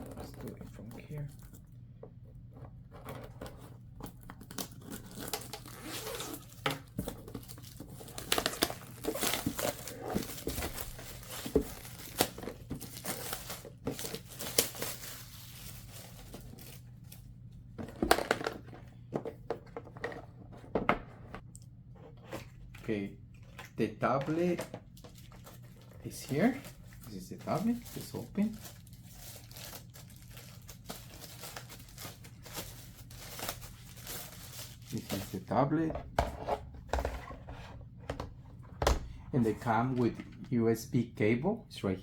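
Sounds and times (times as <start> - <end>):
plastic shrink-wrap tearing: 4.2 - 16.8, 24.3 - 35.5.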